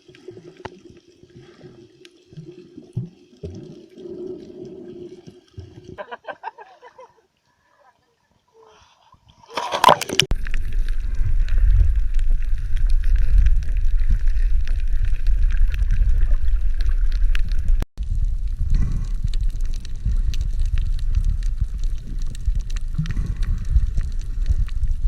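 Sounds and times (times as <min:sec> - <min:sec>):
camera splashing into water: 0:09.5 - 0:10.3
crackling clicks underwater: 0:09.5 - 0:25.0
underwater rumble of moving water: 0:09.8 - 0:25.0.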